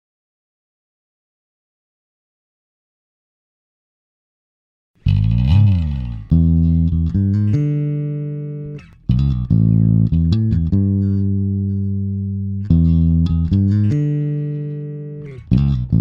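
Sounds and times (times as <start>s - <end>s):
plucked bass and guitar: 5.0s - 16.0s.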